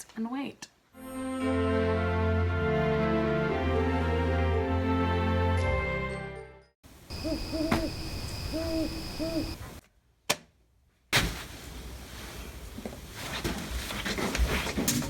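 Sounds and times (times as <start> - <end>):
background music: 1.0 - 6.7
owl hooting: 7.1 - 9.8.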